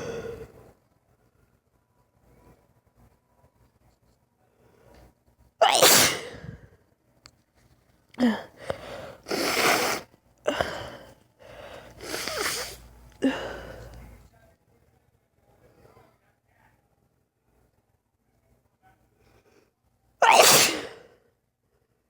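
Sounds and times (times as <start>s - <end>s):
woman sneezing: 5.6s - 6.6s, 9.3s - 10.9s, 12.0s - 13.6s, 20.2s - 21.1s
short intake of breath: 8.6s - 10.0s, 11.6s - 12.8s.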